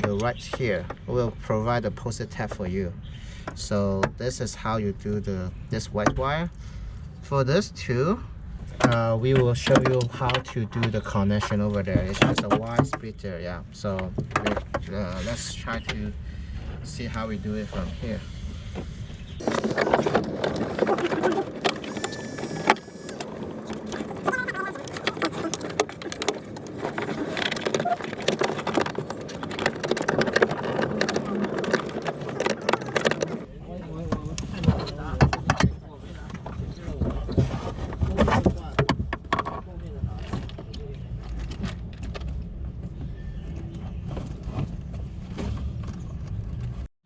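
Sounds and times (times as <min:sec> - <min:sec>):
tools clicking and rattling: 0:19.4 - 0:33.5.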